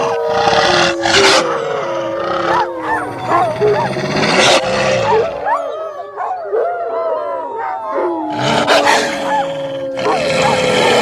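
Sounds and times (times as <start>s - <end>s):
long steady howl: 0.0s - 3.8s, 5.1s - 11.0s
harsh snarling: 0.0s - 5.4s, 8.3s - 11.0s
wolves howling and yipping: 0.0s - 11.0s.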